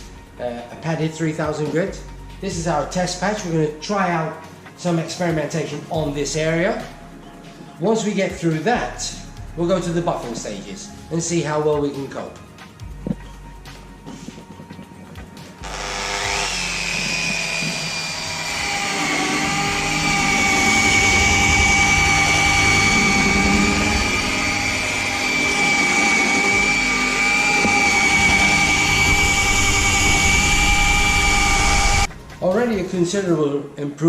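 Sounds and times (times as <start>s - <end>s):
rotary sander whine: 14.0s - 32.1s.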